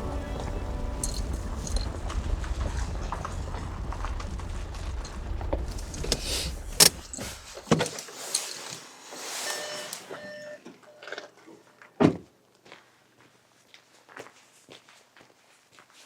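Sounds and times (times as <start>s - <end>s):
car engine rumble from inside: 0.0s - 7.8s
rattling: 0.0s - 9.1s.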